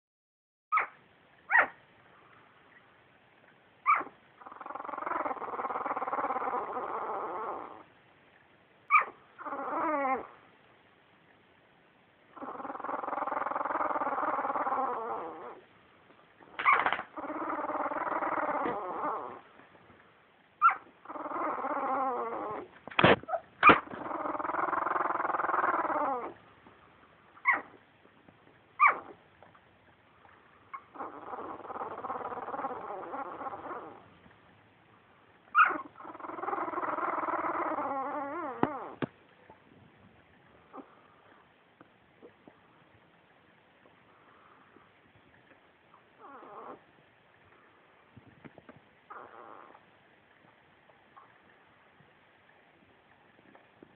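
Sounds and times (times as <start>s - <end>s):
puppies whining: 0.7s - 1.8s, 3.8s - 7.9s, 8.9s - 10.4s, 12.4s - 15.6s, 16.5s - 19.5s, 20.6s - 26.4s, 27.4s - 27.8s, 28.8s - 29.2s, 30.7s - 34.1s, 35.5s - 39.1s, 46.2s - 46.8s, 49.1s - 49.8s
puppy squeaks: 0.7s - 1.8s, 3.8s - 7.8s, 8.9s - 10.3s, 16.5s - 19.4s, 20.6s - 26.4s, 27.4s - 27.8s, 28.8s - 29.2s, 35.5s - 39.1s.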